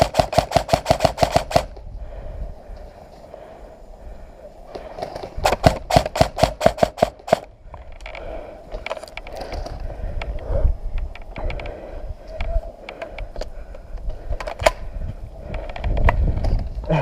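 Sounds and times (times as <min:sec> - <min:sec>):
airsoft gun shots: 0:00.0 - 0:01.7, 0:05.5 - 0:07.4.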